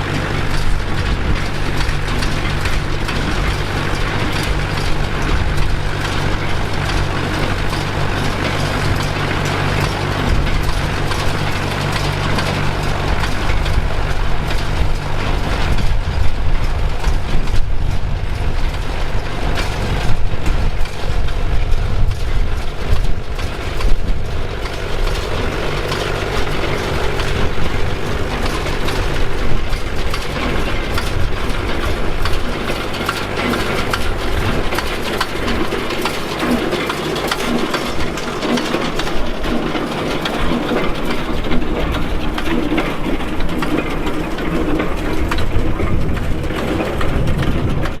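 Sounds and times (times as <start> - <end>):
tractor diesel engine hum: 0.0 - 48.0
baler chains clattering: 20.8 - 48.0.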